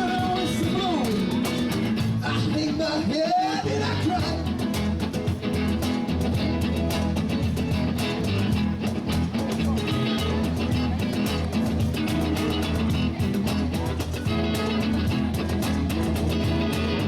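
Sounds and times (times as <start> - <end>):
drums steady beat: 0.0 - 2.6, 4.2 - 17.0
bass guitar: 0.0 - 17.0
electric guitar: 0.0 - 17.0.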